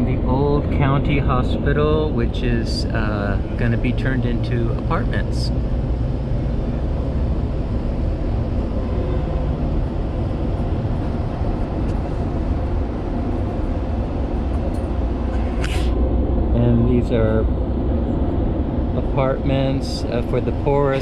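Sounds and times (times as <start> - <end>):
train rumbling in motion: 0.0 - 21.0.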